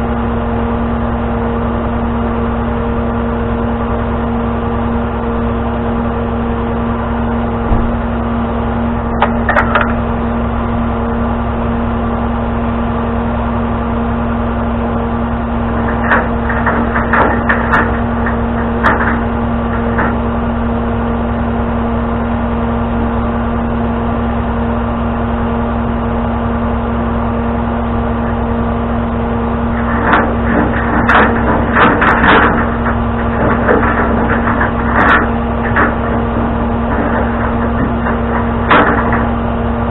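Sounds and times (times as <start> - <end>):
truck engine idling: 0.0 - 39.9
metallic clanks and knocks: 7.7 - 8.1, 9.2 - 10.0, 15.7 - 20.3, 29.7 - 39.4.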